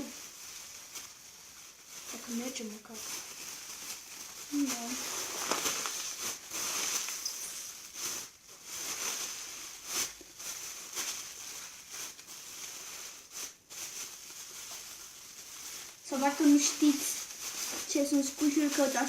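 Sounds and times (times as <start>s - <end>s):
plastic bag crinkling: 0.0s - 19.0s.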